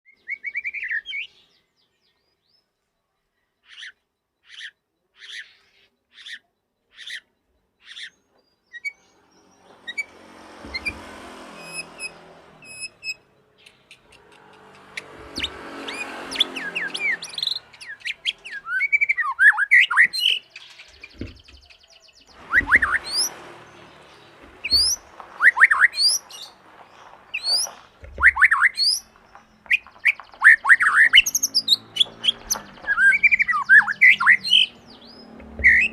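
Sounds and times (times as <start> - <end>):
bird singing whistles and chirps: 0.1 - 2.7, 7.9 - 10.1, 11.6 - 14.2, 15.3 - 26.6, 27.3 - 35.9
bird short evenly spaced notes: 0.3 - 35.9.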